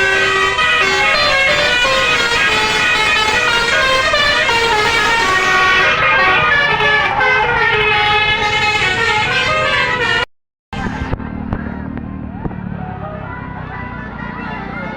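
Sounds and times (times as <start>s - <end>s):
musical air horn playing a tune: 0.0s - 11.0s
low rumble: 10.8s - 14.4s.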